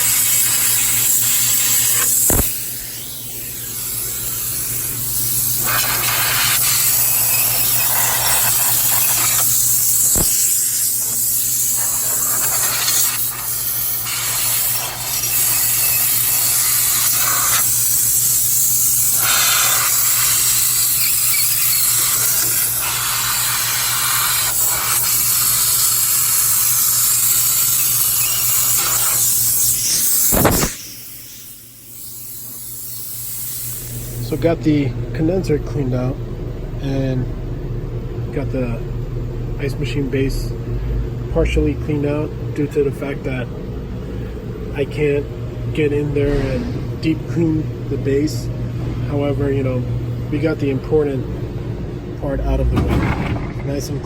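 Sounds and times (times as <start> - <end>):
steady low hum: 0.0 - 19.2, 30.4 - 54.0
rush of compressed gas: 0.0 - 34.2, 52.7 - 54.0.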